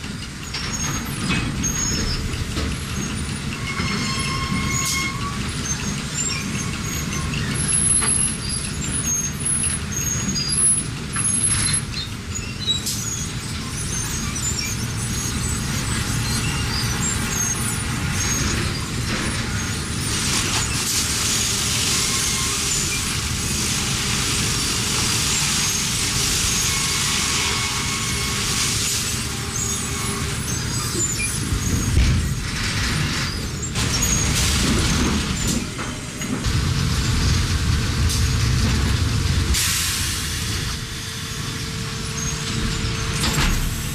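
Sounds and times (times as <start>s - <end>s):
heavy machinery rumbling: 0.0s - 43.9s
metallic clicks and squeaks: 0.2s - 19.8s.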